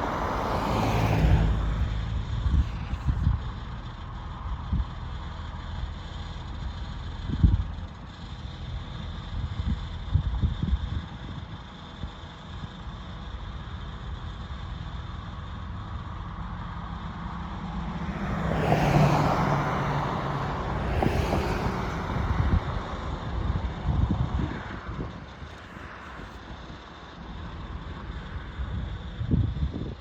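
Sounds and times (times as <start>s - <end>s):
vehicle passing by: 0.0s - 3.3s, 17.5s - 26.7s
steady low rumble: 1.3s - 7.8s, 19.8s - 30.0s.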